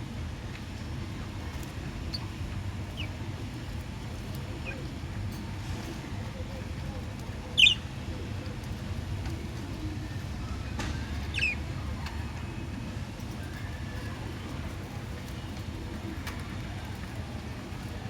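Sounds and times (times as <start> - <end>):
budgerigar chirps: 7.6 - 7.8.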